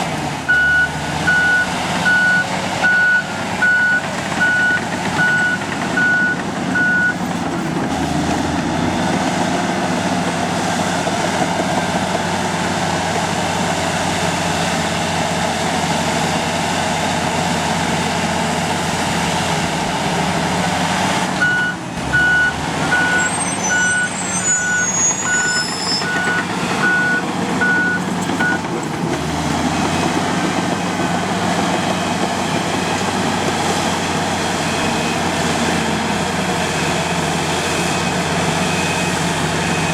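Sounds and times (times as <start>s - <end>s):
diesel engine running: 0.0s - 39.9s
reversing alarm beeping: 0.5s - 7.2s, 21.4s - 28.7s.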